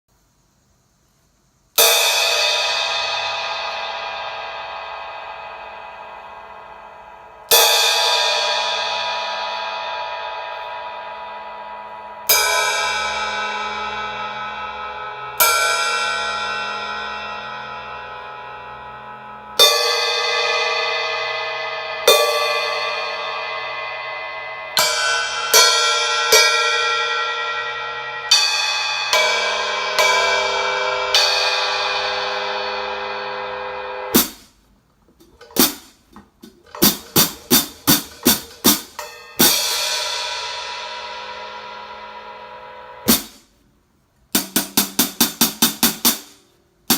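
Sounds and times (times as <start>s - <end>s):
hi-hat cymbal ringing strikes: 0.2s - 34.6s, 35.4s - 43.8s
closed hi-hat strokes: 0.4s - 15.6s, 26.2s - 34.7s, 35.3s - 46.9s.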